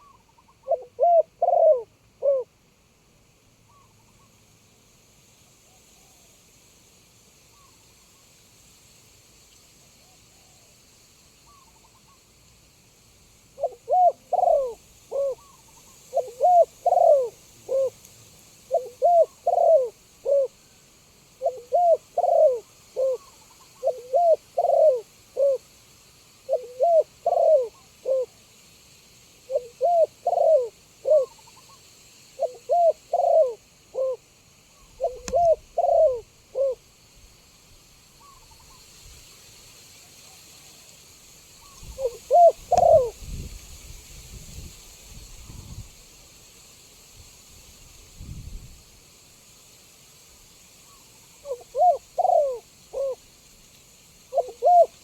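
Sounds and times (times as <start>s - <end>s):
dove cooing: 0.0s - 2.5s, 13.6s - 18.0s, 18.7s - 20.6s, 21.4s - 25.7s, 26.4s - 28.4s, 29.5s - 31.7s, 32.4s - 36.8s, 41.6s - 43.2s, 51.4s - 53.2s, 54.3s - 55.0s.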